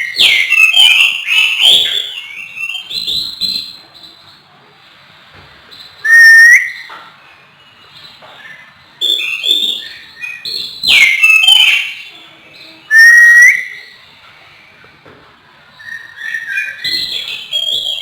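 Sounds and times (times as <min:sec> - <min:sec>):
bird singing: 0:00.0 - 0:04.3, 0:05.8 - 0:07.1, 0:07.7 - 0:14.0, 0:15.8 - 0:18.0.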